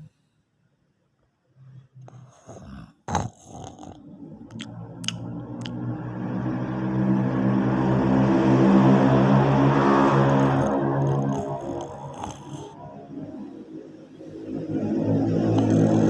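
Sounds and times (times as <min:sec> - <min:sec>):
man snoring loudly: 0:02.1 - 0:04.0, 0:07.3 - 0:13.4, 0:14.5 - 0:16.0.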